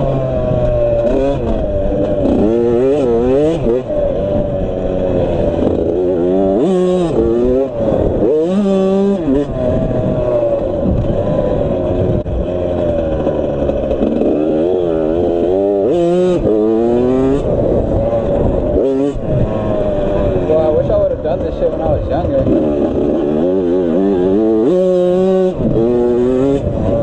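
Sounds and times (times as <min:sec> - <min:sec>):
dirt bike engine revving: 0:00.0 - 0:27.0.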